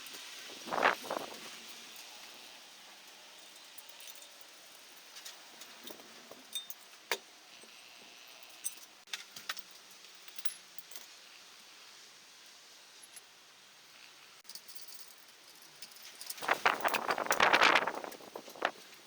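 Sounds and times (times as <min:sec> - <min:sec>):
metal tools clinking: 0:03.3 - 0:11.1, 0:14.4 - 0:18.7.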